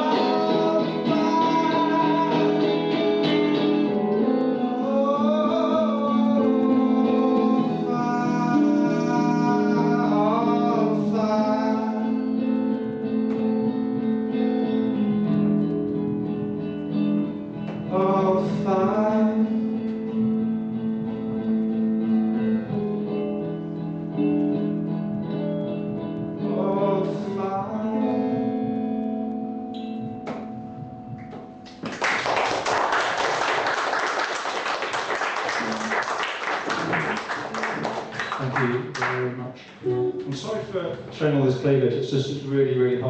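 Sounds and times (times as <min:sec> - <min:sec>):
acoustic guitar strumming chords: 0:00.0 - 0:32.0.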